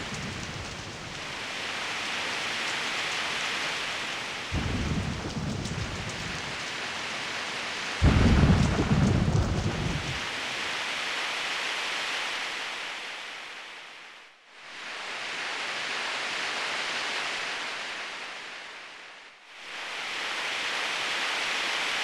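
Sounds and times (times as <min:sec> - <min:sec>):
thunder rumble: 0:00.0 - 0:10.7
ocean surf on a beach: 0:00.0 - 0:22.0.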